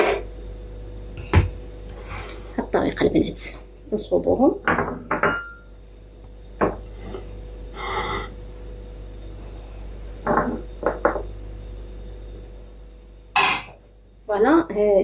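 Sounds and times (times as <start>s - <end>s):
container scraping on counter: 0.0s - 0.2s
containers knocking on counter: 6.6s - 6.8s, 10.2s - 11.3s.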